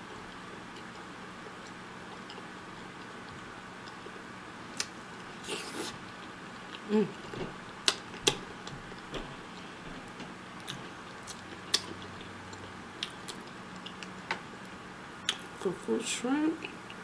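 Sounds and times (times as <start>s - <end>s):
faint steady hum: 0.0s - 17.0s
eating clicks and smacks: 0.3s - 5.0s, 6.7s - 9.2s, 10.6s - 14.5s.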